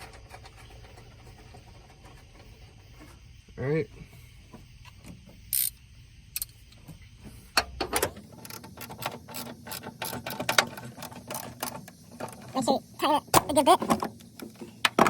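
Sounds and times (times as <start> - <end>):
ratchet wrench clicking: 5.5 - 6.5.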